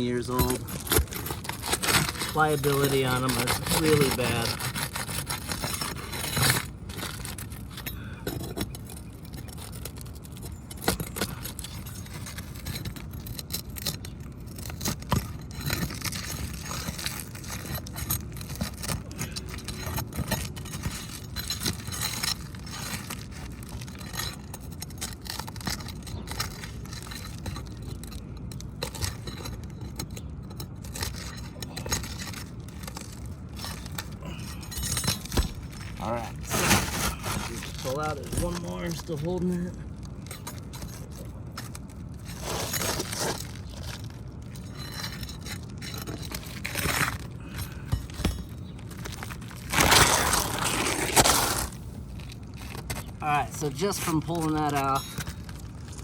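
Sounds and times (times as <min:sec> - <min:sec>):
tool scraping under shingles: 0:00.0 - 0:56.0.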